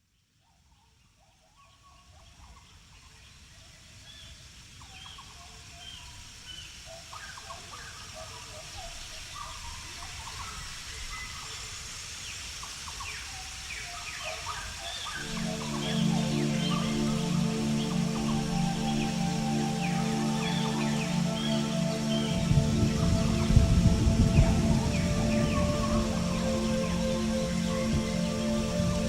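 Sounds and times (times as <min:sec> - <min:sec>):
steady hiss: 0:02.4 - 0:29.0
birds chirping and calling: 0:12.6 - 0:29.0.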